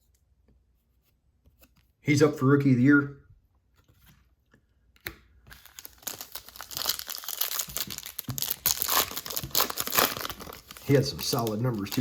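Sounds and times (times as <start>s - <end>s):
foil wrapper tearing and crinkling: 5.5s - 12.0s.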